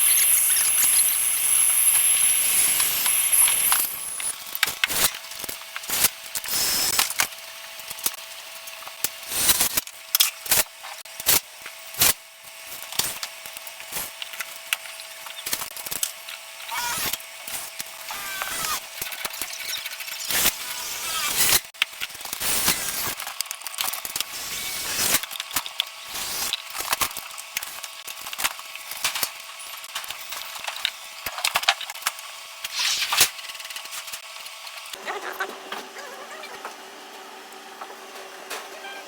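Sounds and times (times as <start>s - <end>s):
soldering torch hissing: 0.0s - 5.1s, 5.9s - 7.0s, 24.3s - 25.2s, 26.1s - 26.6s.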